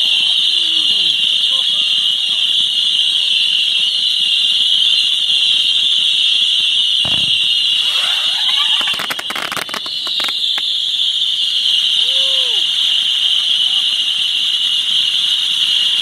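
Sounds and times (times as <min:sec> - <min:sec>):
shrill fireworks whistle: 0:00.0 - 0:16.0
fireworks crackling: 0:06.9 - 0:15.9
firework bang: 0:07.0 - 0:10.7.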